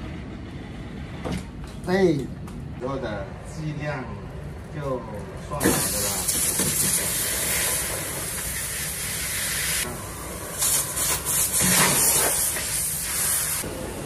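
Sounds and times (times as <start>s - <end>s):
loud steady hiss: 5.5s - 14.0s.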